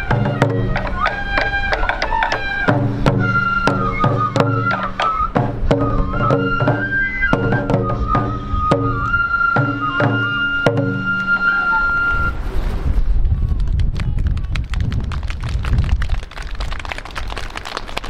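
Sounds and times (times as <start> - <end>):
bamboo flute melody: 0.0 - 12.6.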